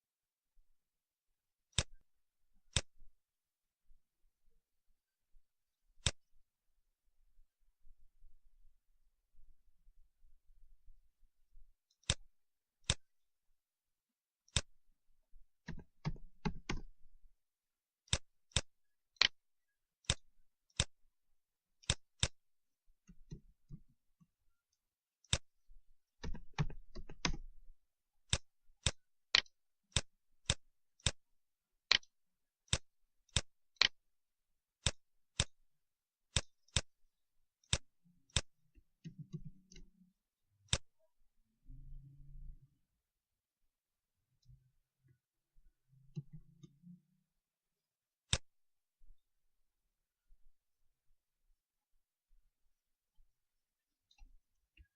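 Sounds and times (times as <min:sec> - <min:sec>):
mouse buttons clicking: 0:01.7 - 0:02.0, 0:02.7 - 0:03.0, 0:11.9 - 0:13.1, 0:14.5 - 0:14.7, 0:15.6 - 0:16.9, 0:18.1 - 0:19.4, 0:21.8 - 0:22.4, 0:25.2 - 0:25.5, 0:26.2 - 0:27.5, 0:31.9 - 0:32.1, 0:36.3 - 0:36.9, 0:37.6 - 0:40.0, 0:40.7 - 0:41.1, 0:46.1 - 0:47.0, 0:48.3 - 0:48.5.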